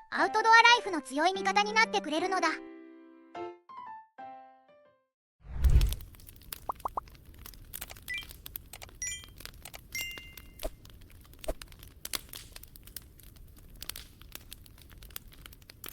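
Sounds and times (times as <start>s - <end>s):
crackling clicks and pops: 5.6s - 15.9s.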